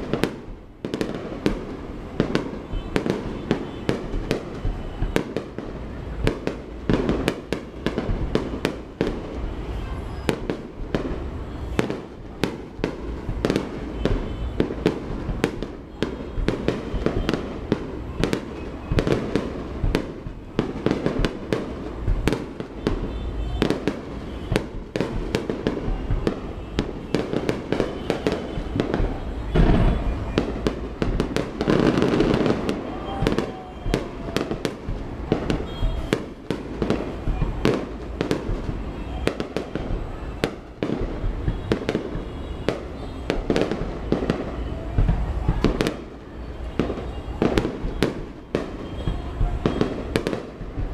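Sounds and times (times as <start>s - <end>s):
fireworks bangs and crackles: 0.0s - 50.9s.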